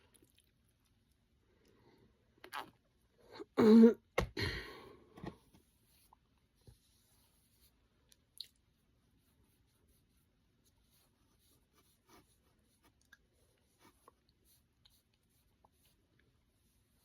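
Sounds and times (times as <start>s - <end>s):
person coughing: 3.4s - 4.9s.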